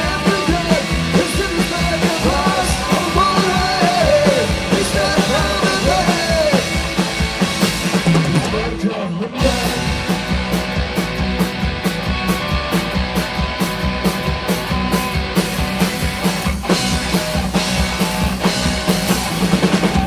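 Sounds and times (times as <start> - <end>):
person singing: 0.0 - 6.9
live rock band playing: 0.0 - 20.0.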